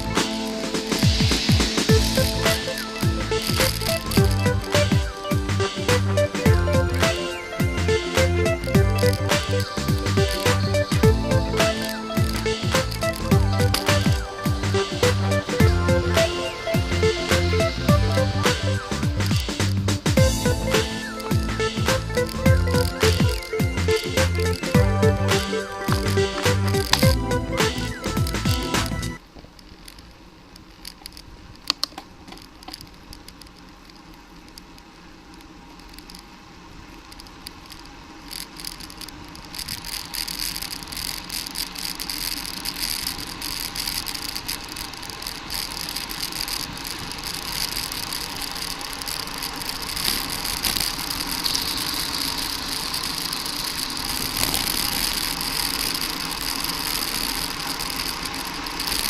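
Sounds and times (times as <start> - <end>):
bicycle clicks: 0.0 - 59.0
bicycle rattling: 0.0 - 59.0
wind and tyre noise: 25.9 - 59.0.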